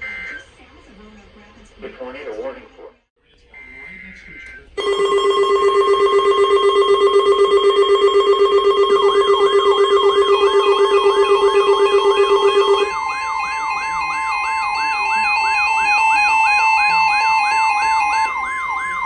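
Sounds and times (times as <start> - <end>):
pulsing alarm tone: 3.6 - 19.0
high warbling two-tone: 8.3 - 19.0
siren yelp sweep: 8.9 - 19.0.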